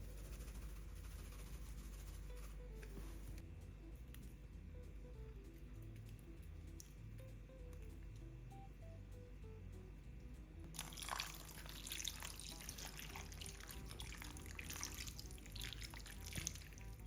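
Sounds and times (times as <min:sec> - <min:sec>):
soft background music: 0:00.0 - 0:17.0
water dripping and trickling: 0:10.7 - 0:17.0.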